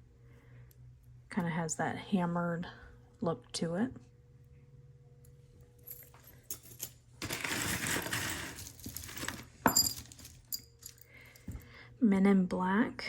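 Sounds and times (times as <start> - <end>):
jewelry clinking and rattling: 5.8 - 11.6.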